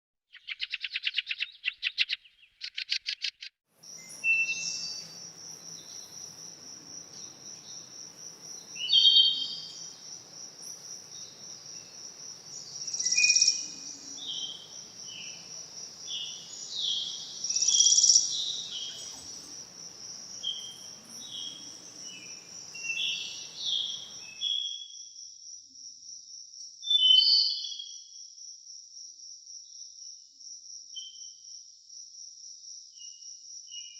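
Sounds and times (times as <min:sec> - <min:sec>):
birds chirping: 0:00.3 - 0:24.4
high-pitched insect drone: 0:03.8 - 0:24.4.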